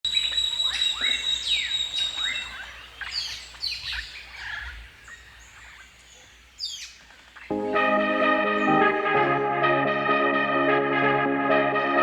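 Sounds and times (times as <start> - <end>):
birds chirping and whistling: 0.1 - 4.1.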